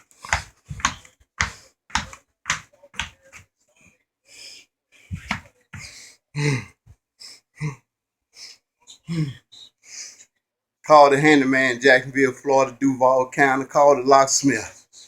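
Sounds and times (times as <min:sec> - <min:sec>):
man breathing forcefully: 0:00.0 - 0:01.8.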